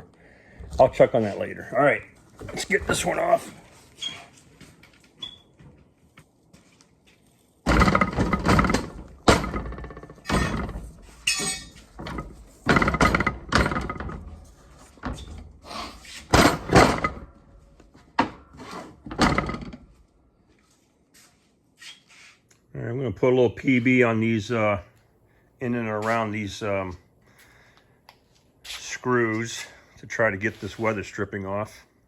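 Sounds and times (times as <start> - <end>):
hand tools scraping and banging: 7.7 - 17.4.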